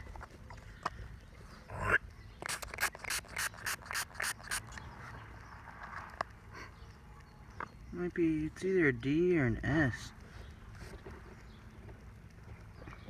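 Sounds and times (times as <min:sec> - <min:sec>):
quick rubbing strokes: 0:02.4 - 0:04.8.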